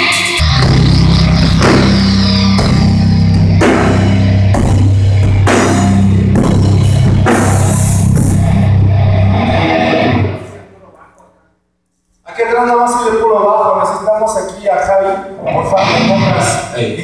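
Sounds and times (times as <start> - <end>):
heavy metal band playing live: 0.0 - 10.5, 15.5 - 16.7
cymbal crashes: 0.5 - 10.4.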